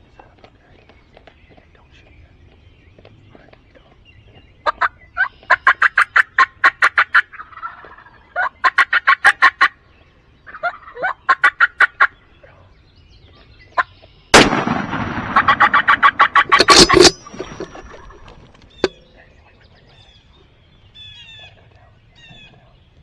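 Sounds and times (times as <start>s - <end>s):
turkey yelping: 4.6s - 9.8s, 10.5s - 12.2s, 15.3s - 18.4s.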